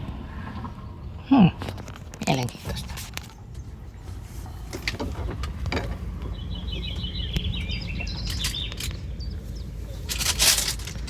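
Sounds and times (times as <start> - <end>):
low outdoor rumble: 0.0 - 11.0
songbird twittering high chirps: 3.3 - 10.2.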